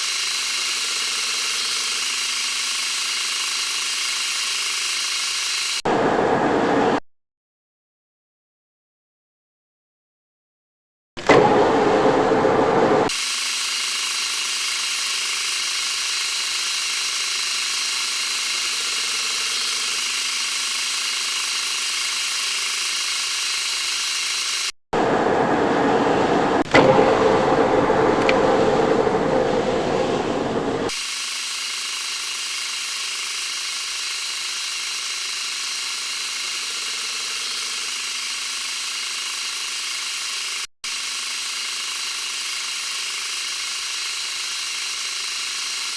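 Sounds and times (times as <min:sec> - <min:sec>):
metal lathe humming: 0:11.2 - 0:13.1, 0:25.0 - 0:31.0
sharp click: 0:26.7 - 0:29.3.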